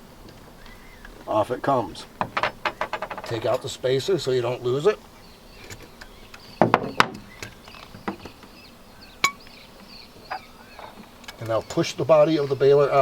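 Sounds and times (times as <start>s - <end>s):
sharp knocks and clicks: 2.2s - 3.7s, 5.6s - 8.5s.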